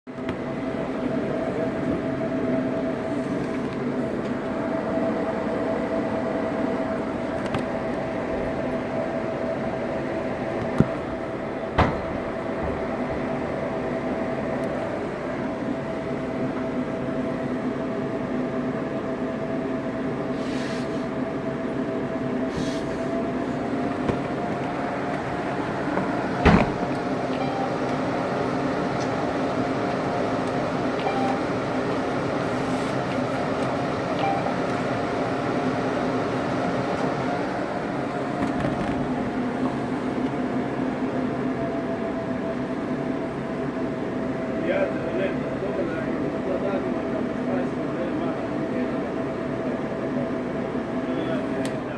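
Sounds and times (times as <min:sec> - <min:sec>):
mechanical hum with held tones: 0:00.1 - 0:20.4, 0:21.0 - 0:51.9.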